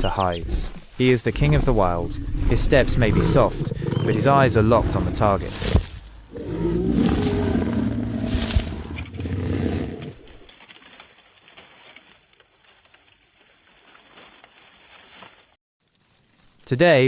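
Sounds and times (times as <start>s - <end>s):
low animal growl: 1.4s - 5.6s, 6.3s - 10.4s.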